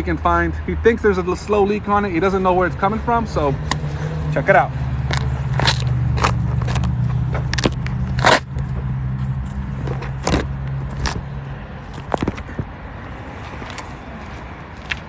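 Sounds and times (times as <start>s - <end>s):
sharp clicks and knocks: 5.1s - 8.9s, 11.9s - 12.7s.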